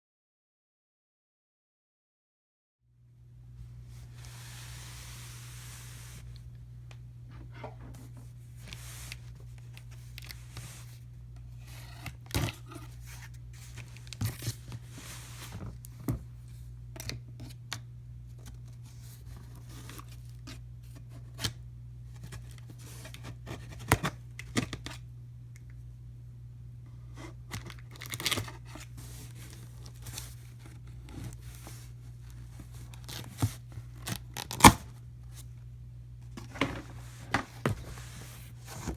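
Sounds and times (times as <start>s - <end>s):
steady low hum: 2.9s - 38.9s
packing tape cut and torn: 27.5s - 28.8s, 32.9s - 34.9s.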